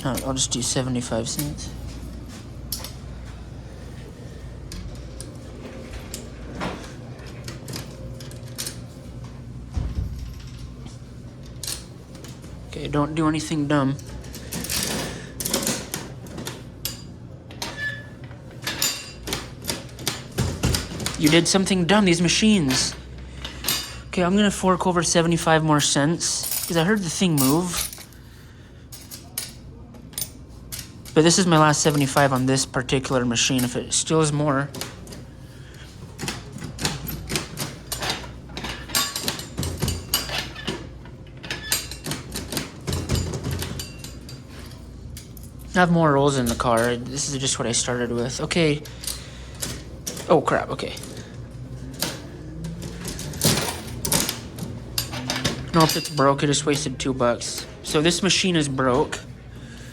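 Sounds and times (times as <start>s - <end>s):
low steady hum: 0.0s - 59.9s
coins clicking into vending machine: 13.2s - 17.8s, 18.6s - 28.3s, 28.9s - 58.3s.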